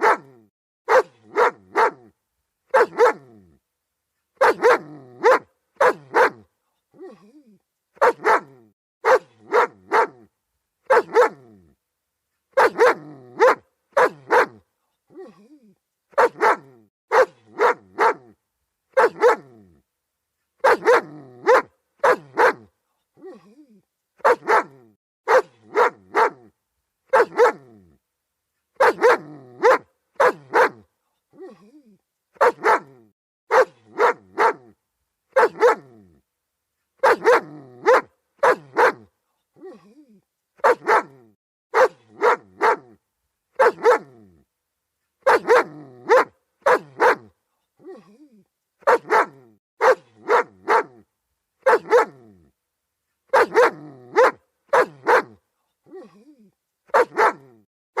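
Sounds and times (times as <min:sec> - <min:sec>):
dog barking: 0:00.0 - 0:02.1, 0:02.7 - 0:03.4, 0:04.4 - 0:07.1, 0:08.0 - 0:11.5, 0:12.5 - 0:14.6, 0:16.1 - 0:19.6, 0:20.6 - 0:23.4, 0:24.2 - 0:26.5, 0:27.1 - 0:27.8, 0:28.8 - 0:31.6, 0:32.4 - 0:36.0, 0:37.0 - 0:39.8, 0:40.6 - 0:43.0, 0:43.6 - 0:44.2, 0:45.2 - 0:48.1, 0:48.8 - 0:52.3, 0:53.3 - 0:56.2, 0:56.9 - 0:58.0.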